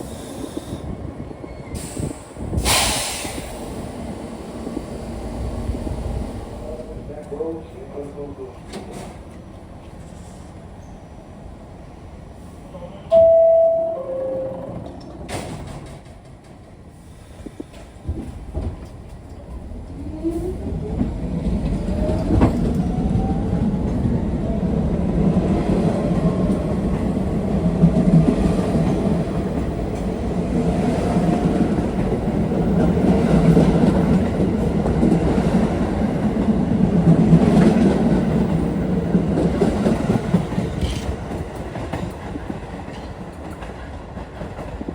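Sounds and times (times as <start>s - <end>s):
two-note descending chime: 13.1s - 15.0s.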